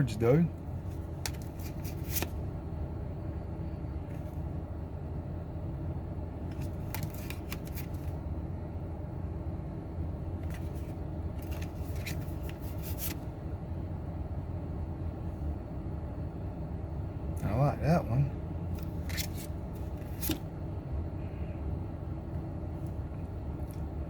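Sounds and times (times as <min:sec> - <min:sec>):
low background rumble: 0:00.0 - 0:24.0
cards snapping and rustling: 0:00.9 - 0:02.4, 0:06.5 - 0:08.2, 0:10.4 - 0:13.2, 0:18.8 - 0:20.4.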